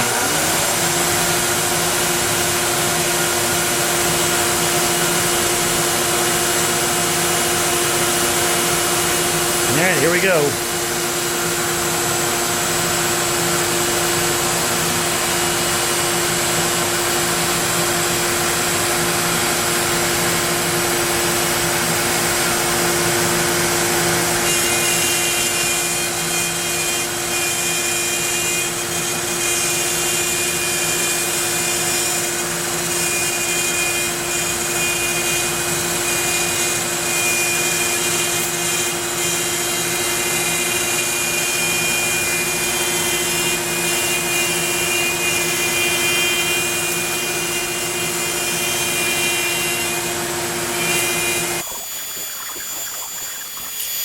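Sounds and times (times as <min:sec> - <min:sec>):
high whining tones: 0:50.9 - 0:54.0.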